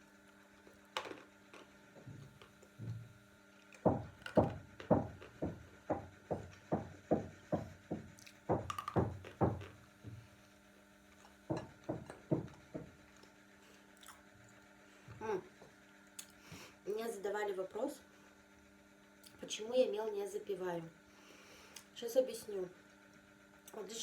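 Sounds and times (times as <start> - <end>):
renovation knocking through walls: 3.8 - 10.3, 11.5 - 13.0.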